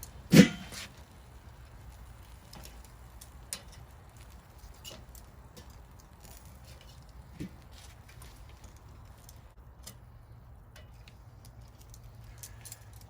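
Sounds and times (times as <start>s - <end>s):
metal tongs clanking on grill: 0.3s - 0.8s.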